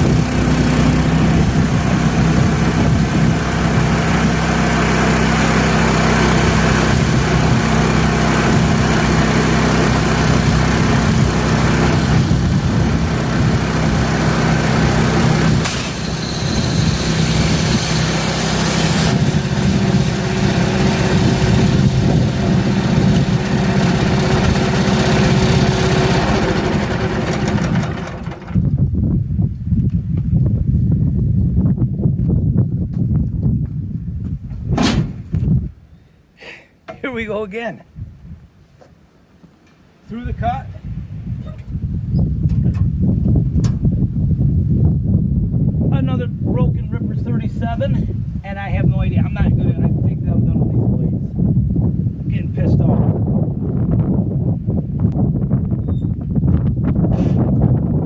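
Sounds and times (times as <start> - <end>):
small gasoline engine running: 0.0 - 28.6.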